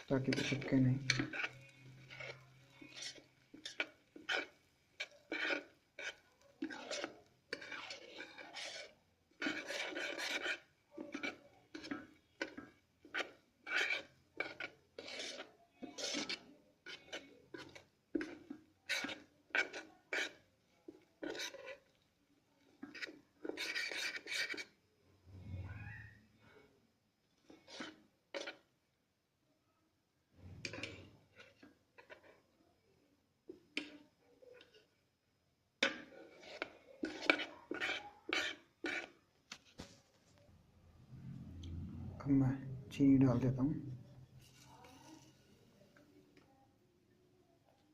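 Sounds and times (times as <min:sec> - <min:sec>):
spoon scraping in kettle: 0:00.0 - 0:22.0, 0:22.6 - 0:26.0, 0:27.4 - 0:28.7, 0:30.4 - 0:32.4, 0:35.8 - 0:40.0, 0:43.2 - 0:46.2.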